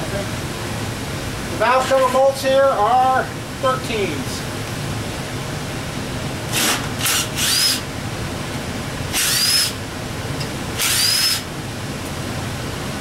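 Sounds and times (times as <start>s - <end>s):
power tool motor whine: 6.5s - 7.8s, 9.1s - 9.8s, 10.8s - 11.5s.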